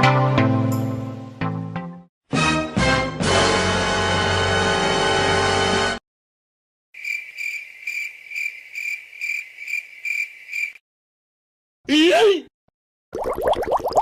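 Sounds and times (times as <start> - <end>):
crickets chirping: 7.0 - 10.8.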